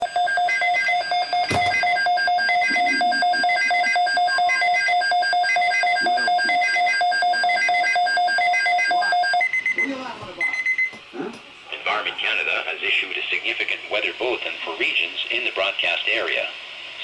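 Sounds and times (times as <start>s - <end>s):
pulsing electronic alert tone: 0.1s - 10.8s
high electronic beeps: 0.1s - 10.9s.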